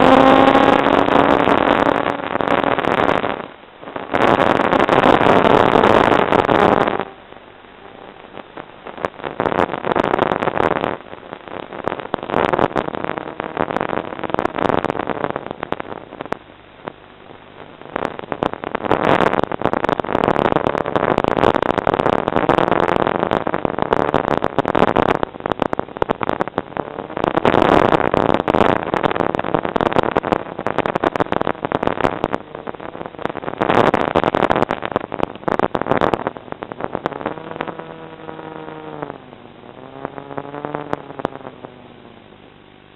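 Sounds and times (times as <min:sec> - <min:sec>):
model aircraft motor and propeller: 0:00.0 - 0:03.3, 0:37.2 - 0:42.3
crackles: 0:00.0 - 0:42.9.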